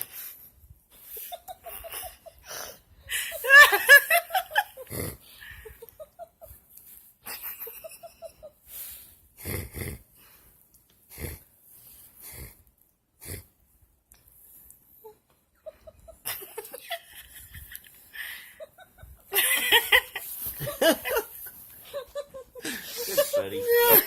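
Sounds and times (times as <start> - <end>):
person snoring: 4.8 - 5.4, 9.4 - 10.0, 11.1 - 11.5, 12.2 - 12.6.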